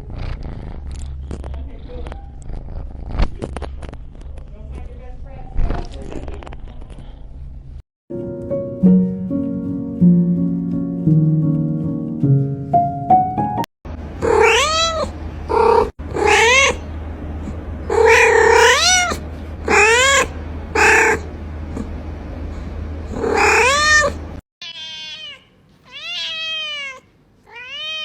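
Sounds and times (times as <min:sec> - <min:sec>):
cat meowing: 0:14.2 - 0:16.9, 0:17.9 - 0:21.9, 0:23.1 - 0:28.0.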